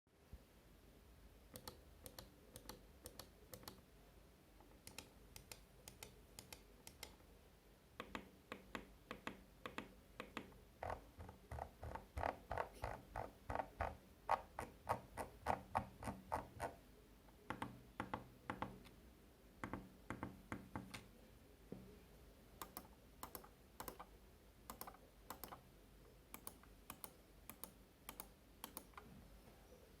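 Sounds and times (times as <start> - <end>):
mouse buttons clicking: 1.5 - 3.8, 4.6 - 7.2, 8.0 - 12.0, 17.5 - 19.0, 22.6 - 24.1, 24.7 - 25.6, 26.3 - 29.1.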